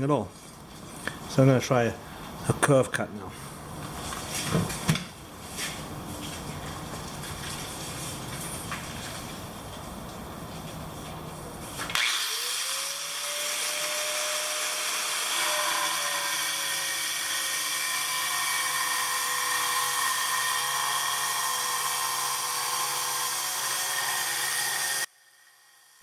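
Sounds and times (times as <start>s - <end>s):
angle grinder cutting tile: 11.8s - 26.0s.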